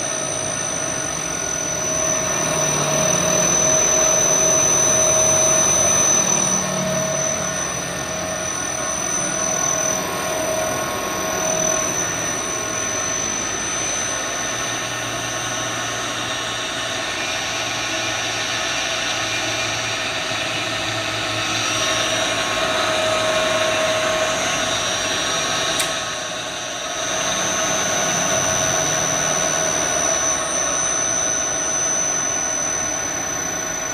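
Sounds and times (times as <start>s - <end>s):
electric motor whirring: 0.0s - 33.9s
click: 25.8s - 26.0s.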